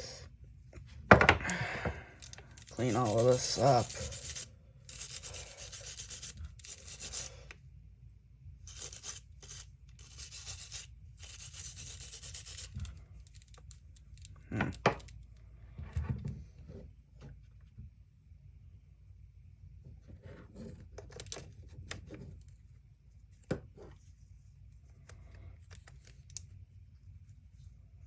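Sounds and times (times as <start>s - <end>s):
brush scrubbing metal: 2.6s - 7.3s.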